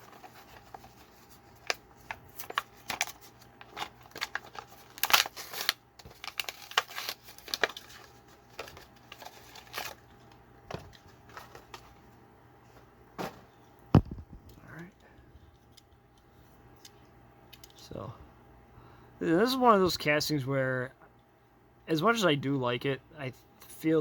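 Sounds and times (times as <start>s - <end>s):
plastic and cardboard crinkling: 0.0s - 12.2s.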